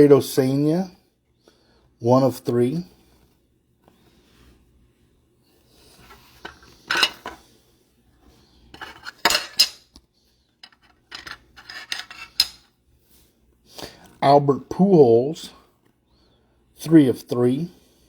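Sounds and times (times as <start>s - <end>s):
cards scraping and clicking on table: 10.6s - 12.7s.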